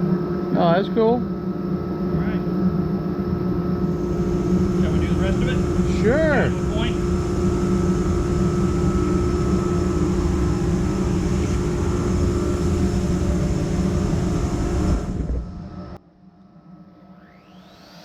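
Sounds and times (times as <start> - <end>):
router surfacing wood: 3.8 - 15.5.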